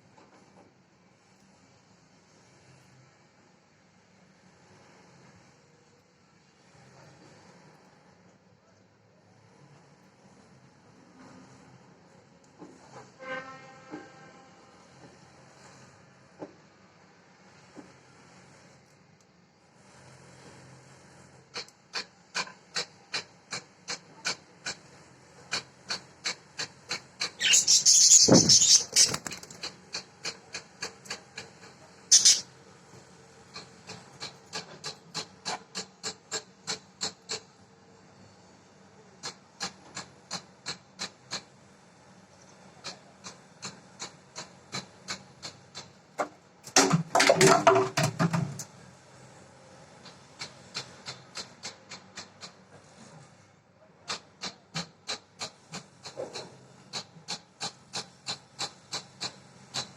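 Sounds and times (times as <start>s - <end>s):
budgies clicking: 26.9s - 29.7s, 32.1s - 32.4s
scratchy bursts: 27.4s - 29.4s, 32.1s - 32.4s.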